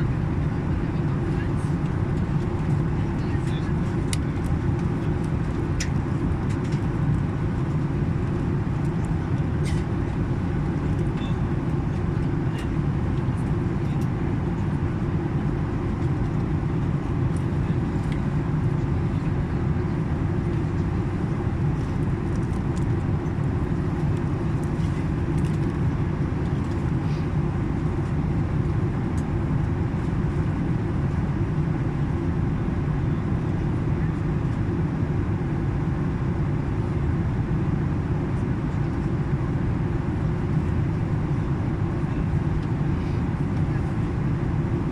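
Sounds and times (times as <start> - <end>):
airliner cabin roar: 0.0 - 44.9.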